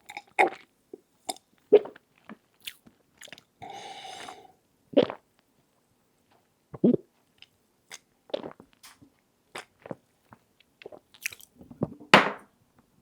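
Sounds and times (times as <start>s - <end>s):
sipping and swallowing: 3.2s - 5.2s.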